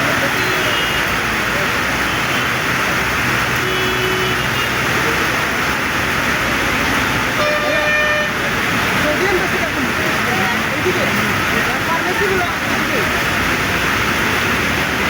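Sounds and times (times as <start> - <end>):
heavy rain pouring: 0.0 - 15.0.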